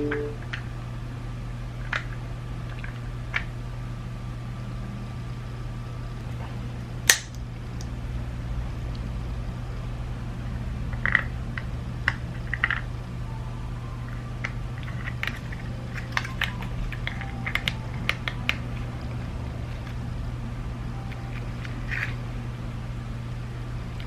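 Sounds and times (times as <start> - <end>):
steady low hum: 0.0 - 24.0
small plastic parts clicking: 14.8 - 18.6.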